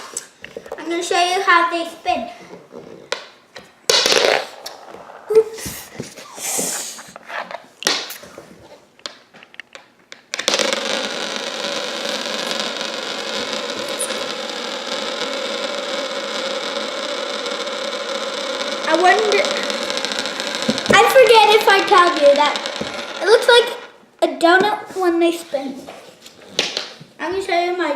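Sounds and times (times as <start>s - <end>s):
marble spinner whirring: 3.9s - 6.8s, 10.3s - 24.0s.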